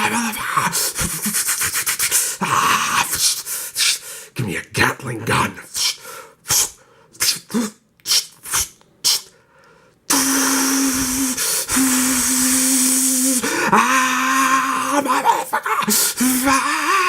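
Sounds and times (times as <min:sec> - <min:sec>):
person imitating gunfire with mouth: 0:06.5 - 0:09.3, 0:10.1 - 0:13.5.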